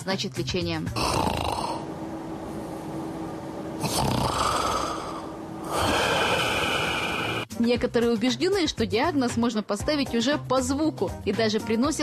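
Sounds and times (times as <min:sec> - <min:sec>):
person snoring: 0:01.0 - 0:01.9, 0:03.8 - 0:07.5.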